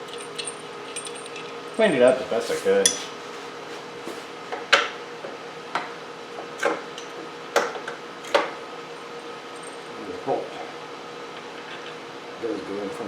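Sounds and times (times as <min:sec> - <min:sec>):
metal tools clicking and clinking: 0:00.0 - 0:02.2.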